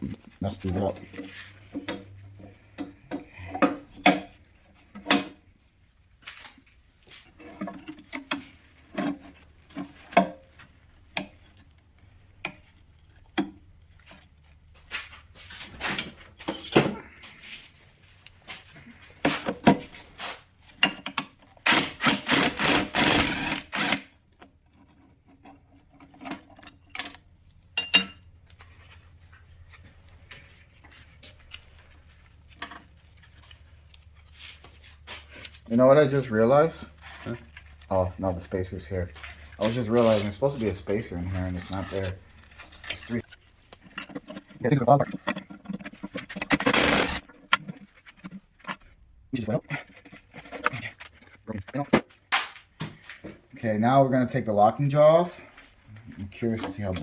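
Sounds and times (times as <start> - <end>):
metal parts knocking and clinking: 20.7 - 24.0, 24.8 - 28.4, 38.5 - 48.9
metal scraping: 27.8 - 51.8.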